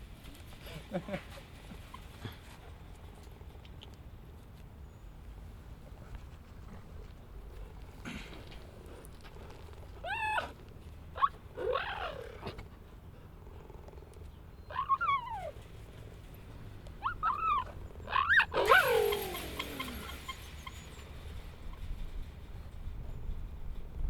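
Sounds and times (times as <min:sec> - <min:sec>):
cheetahs calling: 0:07.6 - 0:22.2.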